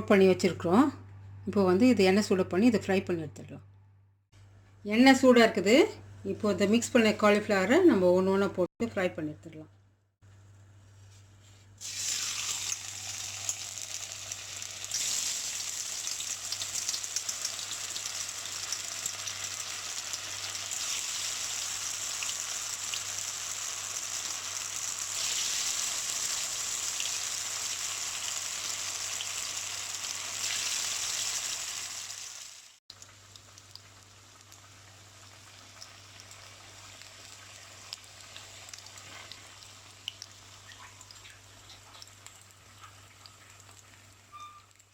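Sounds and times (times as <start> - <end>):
food sizzling in hot oil: 11.8 - 44.8.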